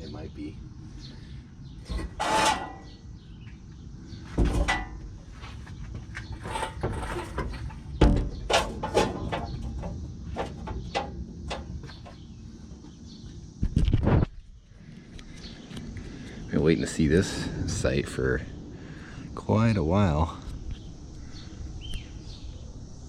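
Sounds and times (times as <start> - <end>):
metal knocks and scraping: 1.8 - 3.0, 4.2 - 12.3.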